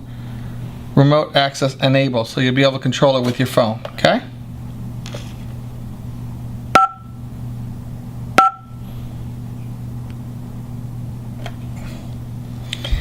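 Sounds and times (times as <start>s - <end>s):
steady low hum: 0.0s - 13.0s
electronic key-press beeps: 6.8s - 7.1s, 8.4s - 8.7s.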